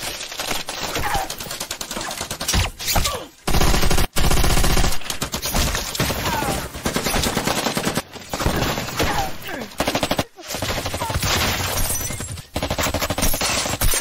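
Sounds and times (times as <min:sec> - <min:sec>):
rapid automatic gunfire: 0:03.5 - 0:09.0, 0:09.7 - 0:14.0.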